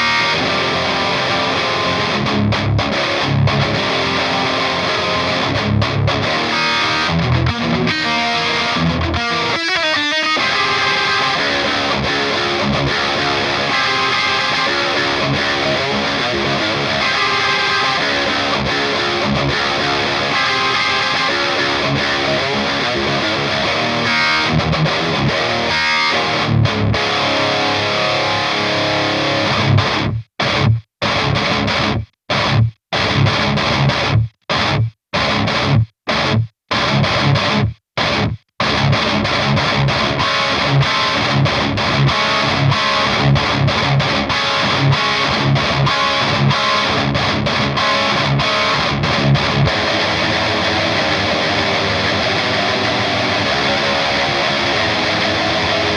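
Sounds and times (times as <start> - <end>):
distorted electric guitars: 0.0 - 55.9
drums: 29.6 - 51.6.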